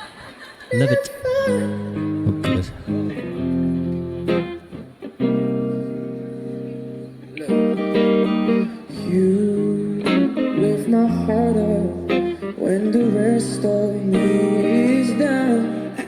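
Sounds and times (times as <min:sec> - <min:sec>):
man singing: 0:00.7 - 0:03.2, 0:07.4 - 0:16.0
strummed guitar chords: 0:01.3 - 0:16.0
bass line: 0:01.7 - 0:04.6.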